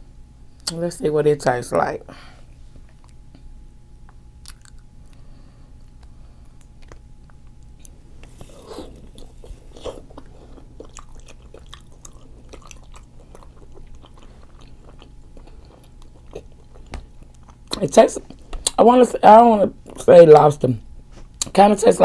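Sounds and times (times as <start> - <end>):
wet mouth chewing clicks: 4.4 - 5.2, 8.8 - 18.8.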